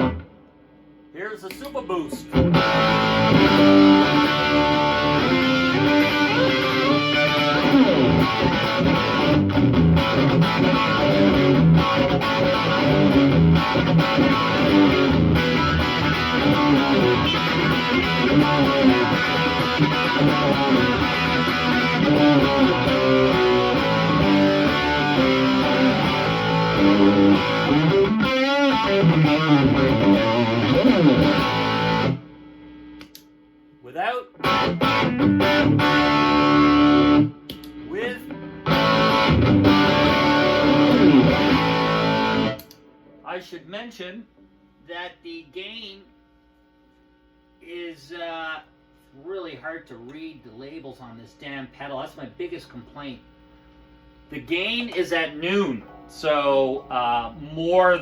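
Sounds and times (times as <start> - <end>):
overdriven electric guitar riffs: 0.0 - 0.6, 2.2 - 33.2, 34.4 - 43.2.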